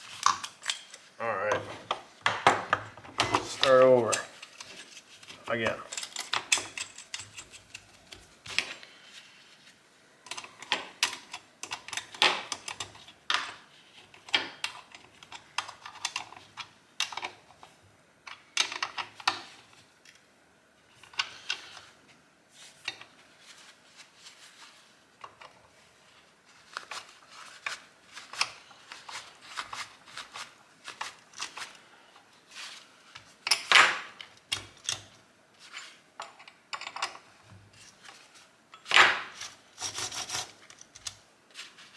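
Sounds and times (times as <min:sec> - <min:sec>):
tools and parts clicking and knocking: 0:00.1 - 0:04.7, 0:05.9 - 0:08.7, 0:10.2 - 0:17.7, 0:18.3 - 0:19.5, 0:33.5 - 0:35.2, 0:36.2 - 0:37.3, 0:38.8 - 0:41.2.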